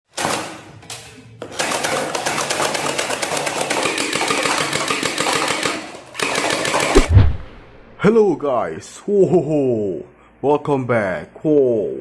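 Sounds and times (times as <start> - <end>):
toy machine gun rattling: 1.7 - 7.0.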